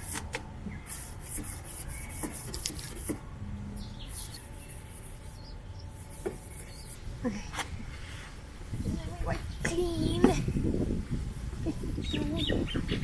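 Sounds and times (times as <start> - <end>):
pad scratching plastic lens: 0.0 - 3.2, 4.0 - 7.0.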